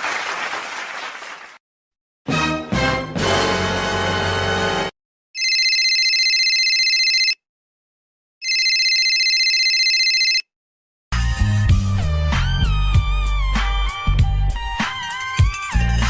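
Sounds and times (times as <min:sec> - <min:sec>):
telephone ringing: 0:05.4 - 0:07.4, 0:08.4 - 0:10.5.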